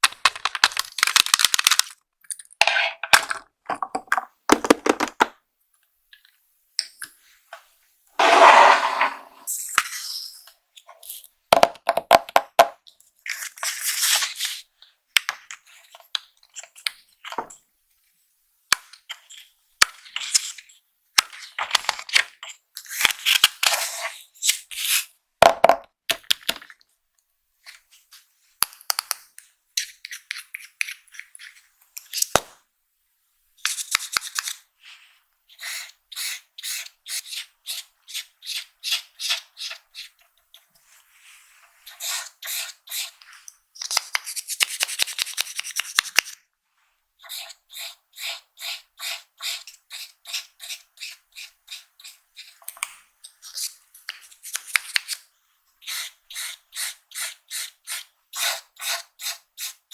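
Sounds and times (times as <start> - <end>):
plastic packaging crinkling and tearing: 0.1 - 2.0.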